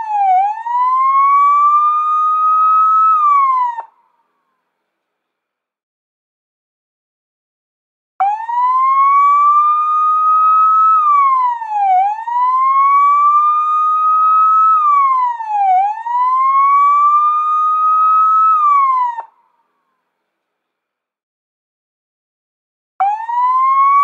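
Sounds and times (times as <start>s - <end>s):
police siren wailing: 0.0s - 3.9s, 8.2s - 19.3s, 23.0s - 24.0s.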